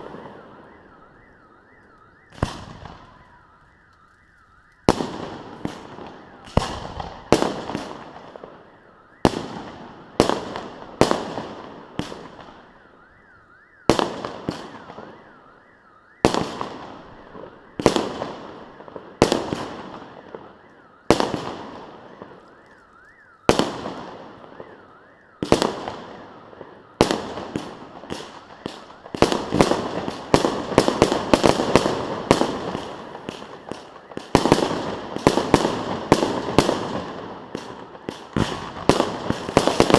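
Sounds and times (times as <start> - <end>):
fireworks bursting and crackling: 0.0 - 12.7, 13.9 - 15.2, 16.2 - 39.9.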